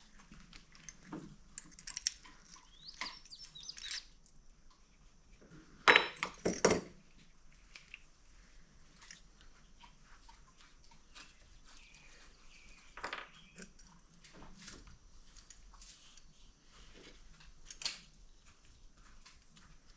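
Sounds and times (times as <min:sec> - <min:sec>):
tools and metal parts clinking: 0:11.8 - 0:13.7.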